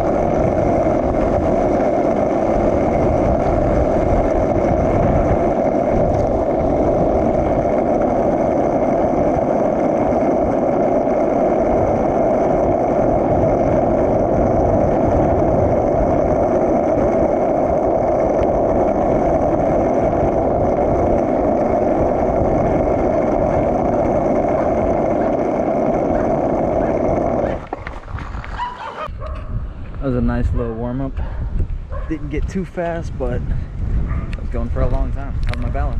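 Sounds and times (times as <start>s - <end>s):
skateboard wheels rolling on concrete: 0.0s - 35.9s
wind buffeting microphone: 0.0s - 35.9s.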